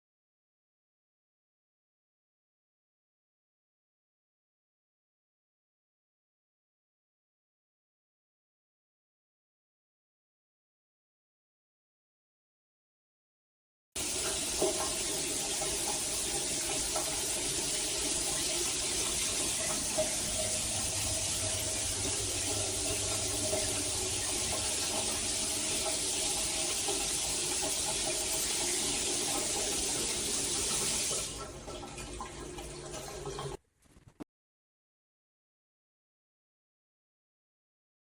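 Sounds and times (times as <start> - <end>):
shower water running: 14.0 - 33.6
water trickling: 14.0 - 33.6.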